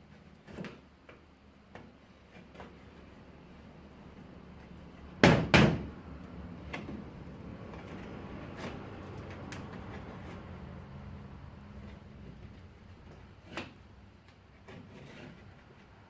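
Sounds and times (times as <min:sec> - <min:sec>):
loud sharp knocks: 0:05.2 - 0:05.9.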